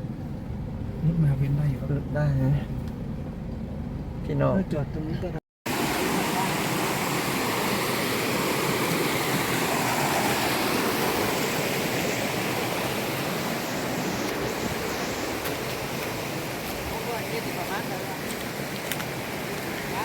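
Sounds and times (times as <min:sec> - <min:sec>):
water rushing in a stream: 0:05.7 - 0:20.0.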